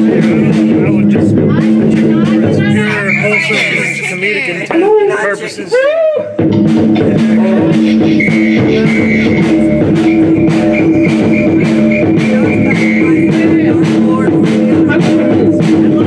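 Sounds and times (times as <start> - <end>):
held high note: 2.7 - 5.8, 8.1 - 13.6
rock band playing: 6.4 - 15.3.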